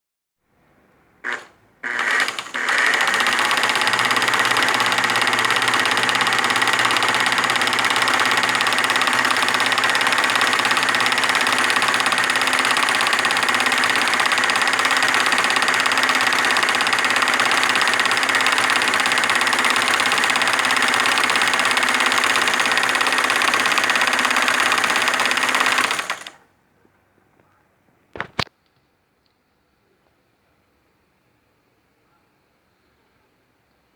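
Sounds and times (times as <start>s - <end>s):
sewing machine running: 1.2s - 26.4s.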